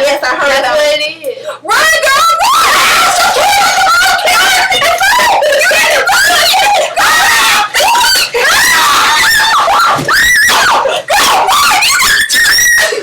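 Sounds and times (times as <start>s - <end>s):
high-pitched screaming: 2.4s - 13.0s.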